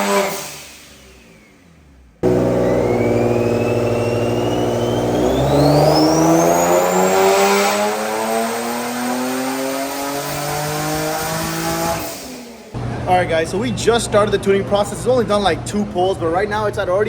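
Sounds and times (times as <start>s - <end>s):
engine revving on a dyno: 0.0s - 12.9s
turbo spool whine: 2.2s - 7.5s.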